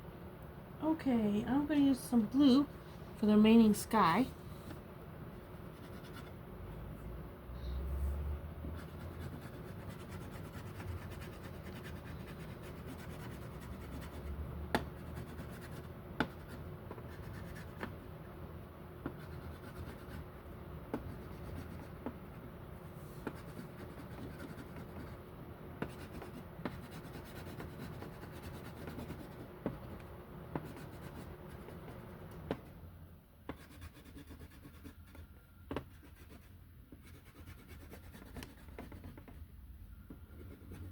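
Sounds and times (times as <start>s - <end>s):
colouring tool scratching on paper: 8.8s - 14.3s, 14.9s - 17.9s, 19.1s - 20.3s, 21.0s - 22.0s, 23.2s - 25.2s, 25.8s - 29.5s, 30.6s - 31.8s, 33.5s - 35.2s, 35.9s - 39.3s, 40.3s - 40.9s.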